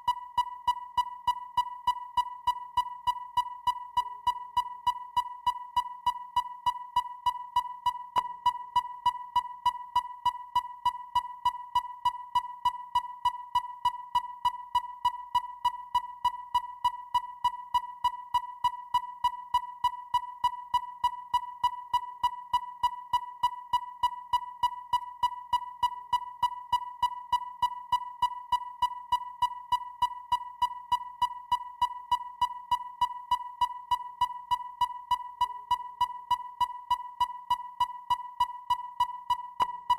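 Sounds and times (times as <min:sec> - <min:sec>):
sharp electronic ticks: 0:00.0 - 0:39.9.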